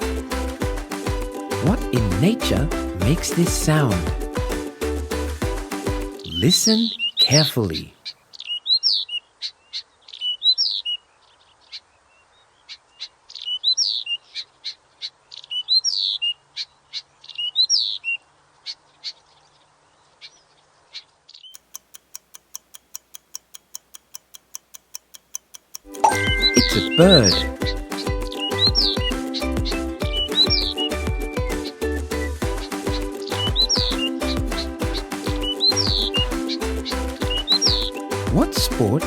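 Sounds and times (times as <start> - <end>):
countdown timer ticking: 0.6 - 4.7, 22.6 - 31.7, 32.4 - 39.0
bird chirping: 6.2 - 39.0.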